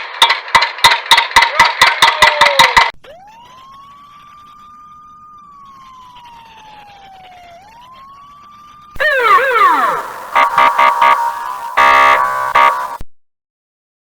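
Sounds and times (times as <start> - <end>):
siren wailing: 3.0 - 13.0.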